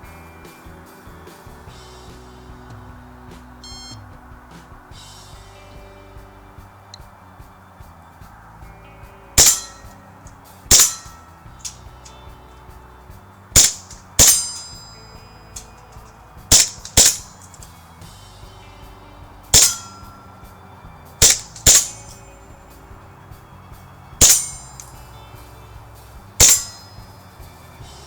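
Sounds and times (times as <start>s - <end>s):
faint background music: 0.0s - 28.0s
bbs clanging on metal plates: 8.4s - 28.0s.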